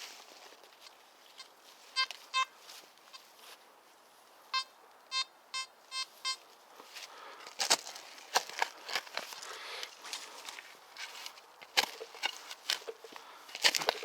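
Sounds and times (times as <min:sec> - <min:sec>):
metal detector beeping: 0:01.4 - 0:03.3, 0:04.5 - 0:06.4.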